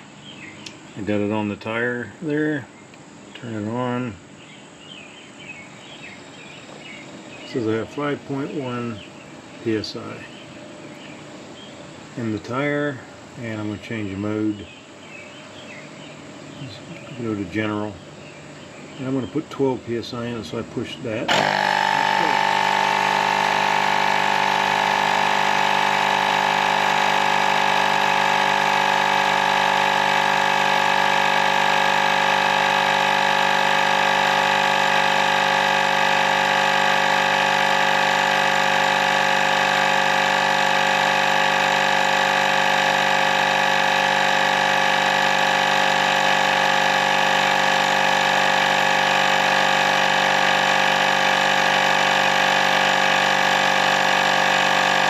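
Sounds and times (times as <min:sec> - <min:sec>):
portable air compressor pumping: 0:21.2 - 0:55.0.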